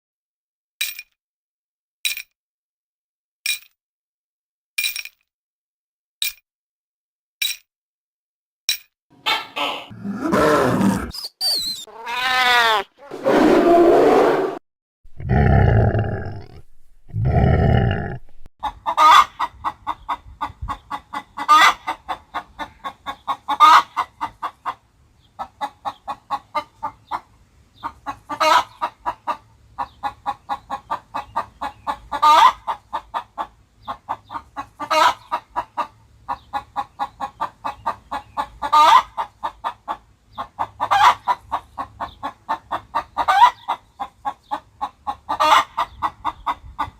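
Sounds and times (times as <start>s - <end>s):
cartoon chicken clucking: 9.2s - 10.1s, 18.4s - 24.8s, 27.8s - 46.9s.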